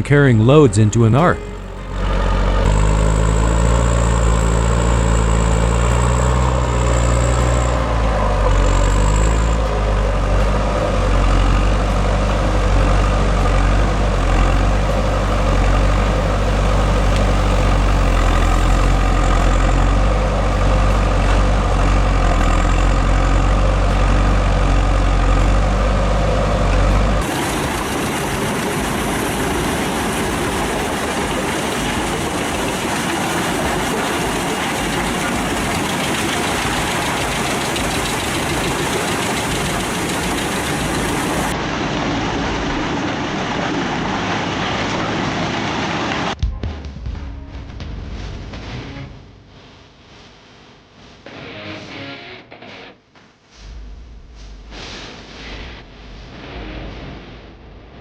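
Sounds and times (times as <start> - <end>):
diesel truck engine droning: 0.0 - 46.4
noisy machine: 0.0 - 46.7.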